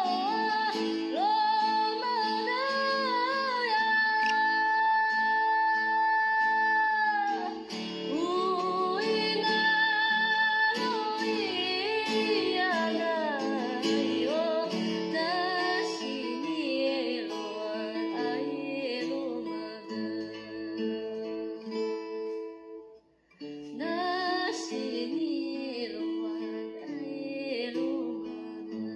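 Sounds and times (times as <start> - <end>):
person singing or humming: 0.0 - 21.5
plucked guitar: 0.0 - 28.9.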